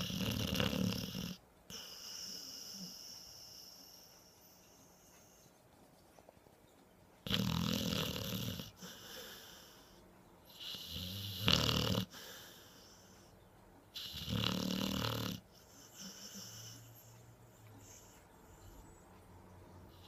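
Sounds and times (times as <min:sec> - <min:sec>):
loud snoring: 0:00.0 - 0:03.0, 0:07.3 - 0:09.0, 0:10.5 - 0:12.4, 0:14.0 - 0:17.0.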